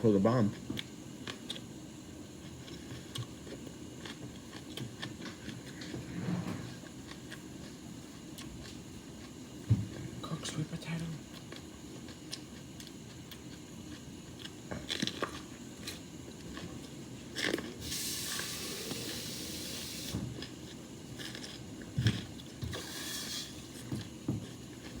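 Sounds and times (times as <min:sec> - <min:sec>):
steam hissing: 0:17.8 - 0:20.2, 0:22.8 - 0:23.6.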